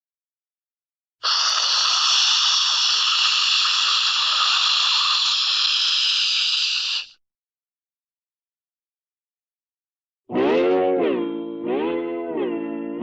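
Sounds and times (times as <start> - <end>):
steady hiss: 1.2 - 7.1.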